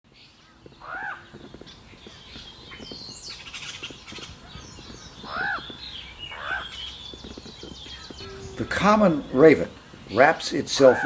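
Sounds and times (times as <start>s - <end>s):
birds chirping: 0.1s - 11.0s
raven croaking: 5.2s - 6.9s, 8.2s - 11.0s.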